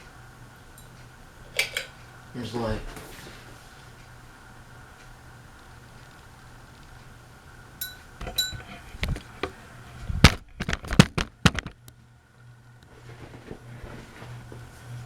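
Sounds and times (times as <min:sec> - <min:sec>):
ceiling fan humming: 0:00.0 - 0:15.0
short glassy ring: 0:07.8 - 0:08.7
sharp clicks and clinks: 0:07.8 - 0:08.8.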